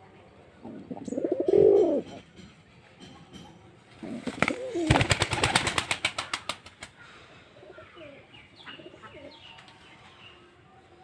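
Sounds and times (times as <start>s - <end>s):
pigeon wings flapping: 4.1s - 7.0s.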